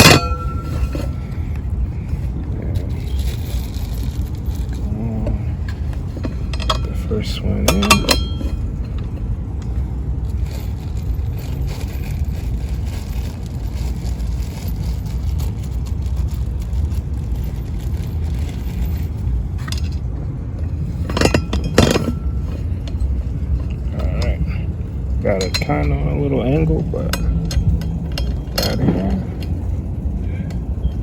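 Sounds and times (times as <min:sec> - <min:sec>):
metallic clinks and scrapes of bolts: 0:00.0 - 0:01.4, 0:05.7 - 0:09.3, 0:20.9 - 0:24.5, 0:25.1 - 0:31.0
low rumble: 0:00.0 - 0:31.0.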